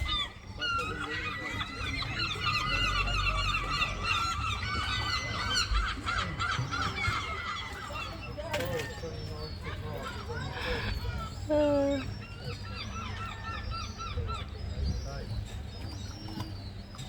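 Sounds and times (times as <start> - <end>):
birds honking and squawking: 0.0 - 17.0.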